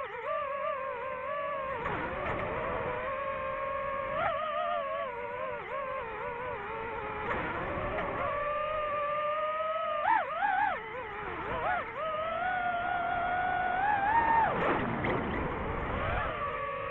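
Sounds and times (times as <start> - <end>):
drone motors whining: 0.0 - 16.9.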